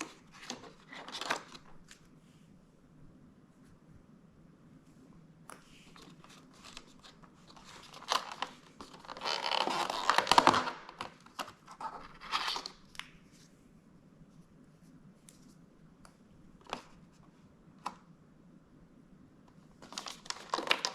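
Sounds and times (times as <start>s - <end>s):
cardboard packaging tearing: 7.9s - 10.9s.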